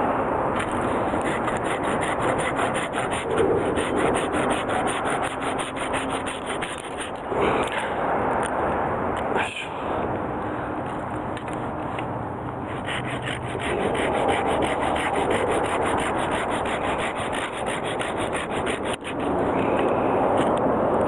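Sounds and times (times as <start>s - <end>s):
hand saw cutting wood: 0.6s - 7.8s, 12.6s - 19.9s.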